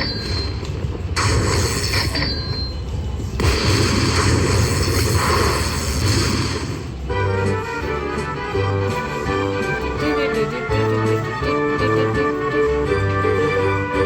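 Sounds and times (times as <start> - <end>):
slot machine jingle: 0.0 - 0.7, 1.6 - 3.0, 7.3 - 14.0
noisy electronic rush: 0.0 - 7.1.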